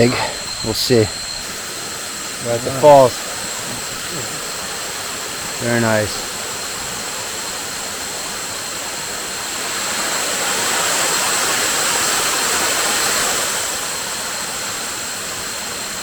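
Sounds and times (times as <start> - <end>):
waterfall rushing: 0.0 - 15.4.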